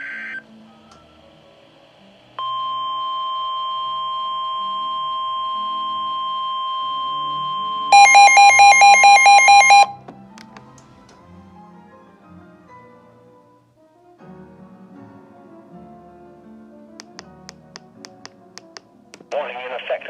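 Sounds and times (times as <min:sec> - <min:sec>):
steady single alarm tone: 0:02.4 - 0:10.0
warbling electronic alarm: 0:02.6 - 0:10.0.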